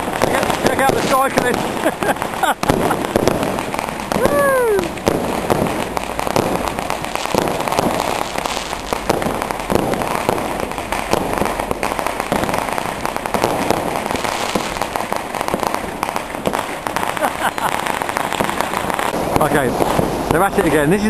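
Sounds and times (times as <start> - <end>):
firecrackers cracking and banging: 0.0 - 21.0.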